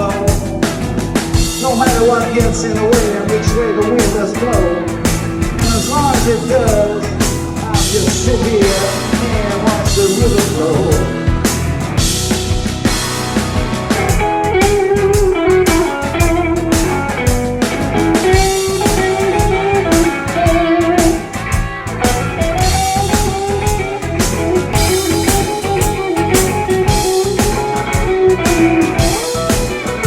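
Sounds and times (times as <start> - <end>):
bass line: 0.0 - 28.2
drum kit: 0.0 - 30.0
guitar solo: 22.0 - 29.4.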